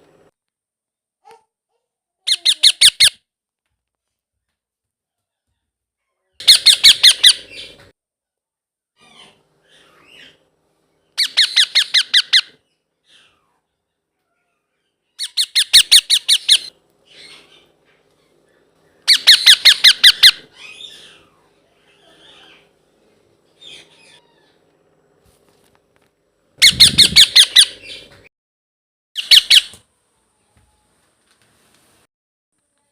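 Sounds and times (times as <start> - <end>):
parakeet squawking: 2.3 - 3.2, 6.4 - 7.8, 11.2 - 13.4, 15.2 - 18.3, 19.0 - 22.7, 23.6 - 24.6, 26.6 - 28.1.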